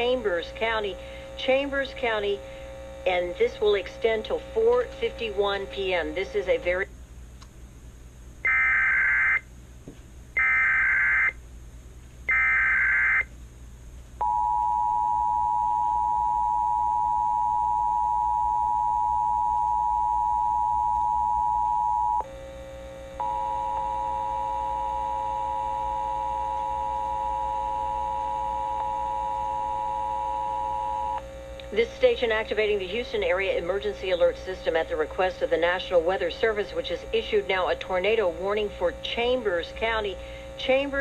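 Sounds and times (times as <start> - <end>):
low buzzy tone: 0.0 - 6.9, 14.2 - 33.8
warbling data bursts: 8.5 - 9.4, 10.4 - 11.4, 12.3 - 13.3.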